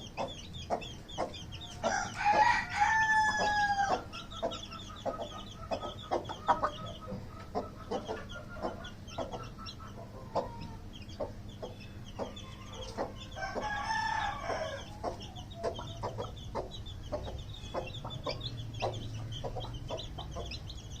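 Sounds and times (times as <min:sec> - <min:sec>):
chickens clucking: 0:00.0 - 0:21.0
chicks peeping: 0:00.0 - 0:21.0
drawn-out chicken call: 0:01.7 - 0:04.2.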